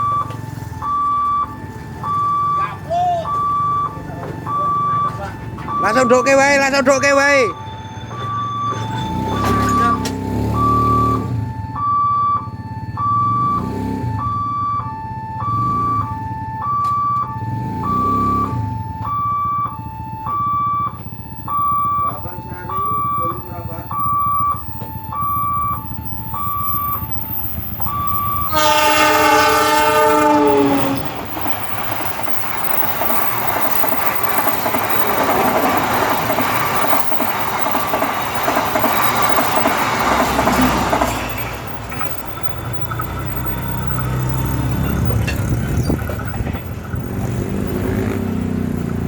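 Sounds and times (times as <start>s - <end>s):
level crossing alarm: 0.0s - 49.0s
low rumble of engines: 0.0s - 49.0s
train wagons clickety-clack: 3.2s - 11.0s, 18.6s - 49.0s
train horn: 28.4s - 31.2s.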